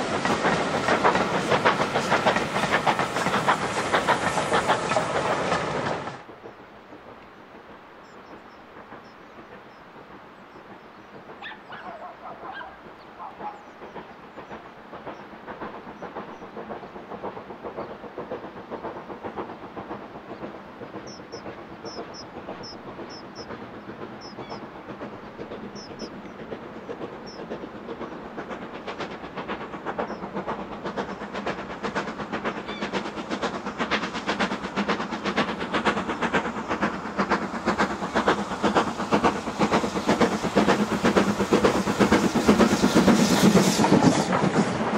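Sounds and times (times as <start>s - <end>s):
steam locomotive exhaust beats: 0.0s - 44.9s.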